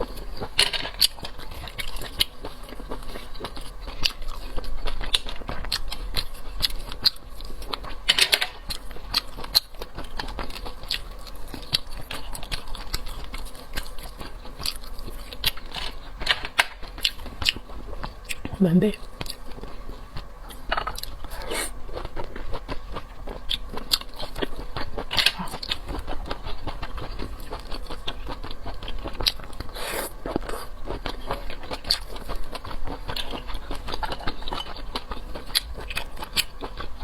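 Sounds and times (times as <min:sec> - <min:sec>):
chewing with mouth clicks and smacks: 0:00.0 - 0:37.0.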